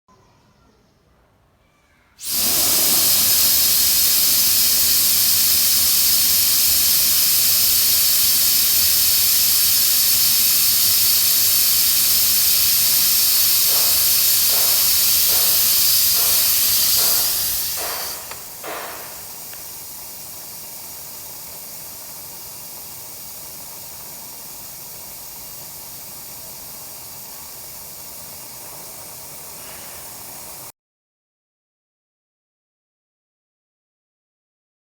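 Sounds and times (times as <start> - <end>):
loud steady hissing: 2.2 - 30.7
knocks: 13.7 - 19.3.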